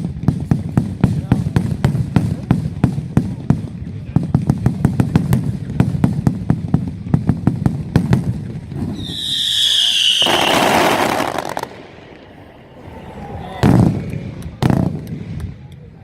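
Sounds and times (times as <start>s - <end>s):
firework bangs: 0.0s - 12.8s, 13.6s - 15.6s
whistling firework: 8.7s - 15.6s
loud rushing hiss: 9.0s - 13.3s.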